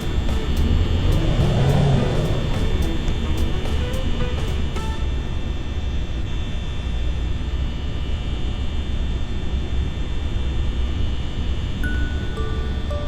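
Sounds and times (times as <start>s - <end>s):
electric fan running: 0.0s - 6.9s
faint high whine: 0.0s - 13.0s.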